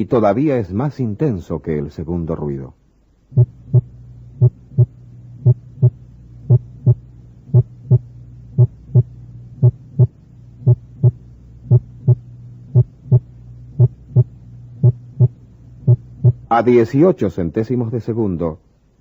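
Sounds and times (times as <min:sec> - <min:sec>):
steady low hum: 0:00.0 - 0:19.0
heartbeat lub-dub: 0:03.3 - 0:16.5.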